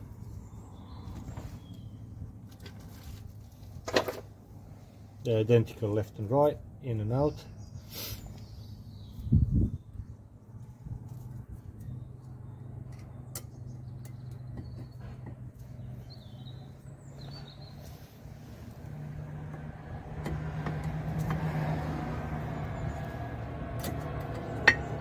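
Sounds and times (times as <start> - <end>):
bird chirping: 0.2 - 2.1, 7.2 - 10.2, 11.8 - 18.5
vehicle engine hum: 8.4 - 25.0.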